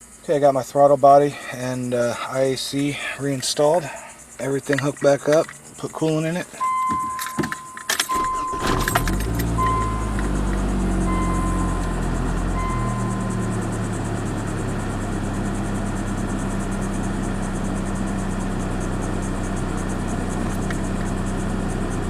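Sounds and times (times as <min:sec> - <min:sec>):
car engine idling: 0:00.0 - 0:22.0
short high beeps: 0:06.6 - 0:10.3, 0:10.9 - 0:13.6.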